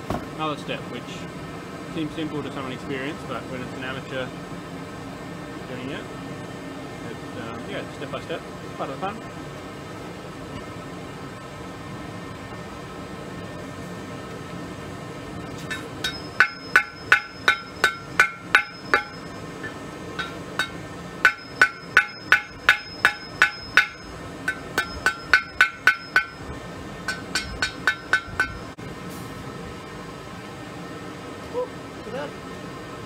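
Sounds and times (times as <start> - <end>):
hammer striking steel on anvil: 15.7 - 26.4, 27.0 - 28.8.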